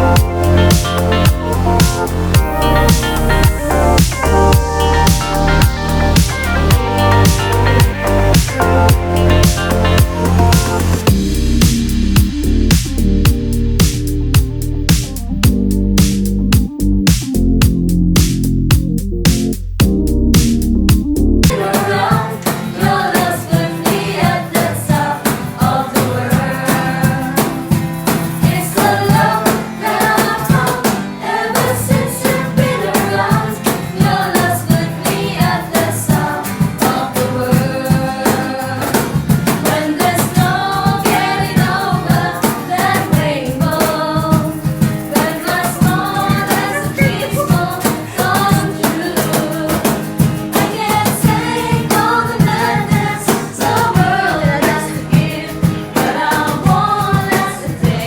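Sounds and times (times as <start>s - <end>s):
several voices singing: 0.0s - 11.2s, 21.4s - 58.0s
band accompaniment: 0.0s - 22.3s
steady drum beat: 0.0s - 58.0s.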